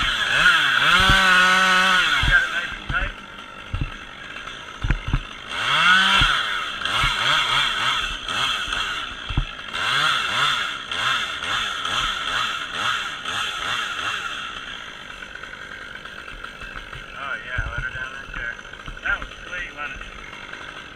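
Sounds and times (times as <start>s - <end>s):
chainsaw revving: 0.0s - 20.9s
short knocks: 6.1s - 6.4s.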